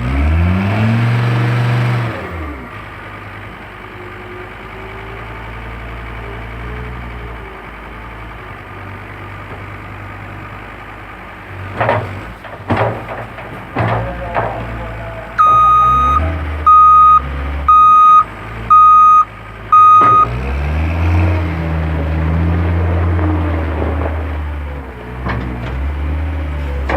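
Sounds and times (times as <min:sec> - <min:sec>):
diesel engine running: 0:00.0 - 0:26.9
engine revving: 0:00.0 - 0:26.9
backup alarm beeping: 0:15.4 - 0:20.4.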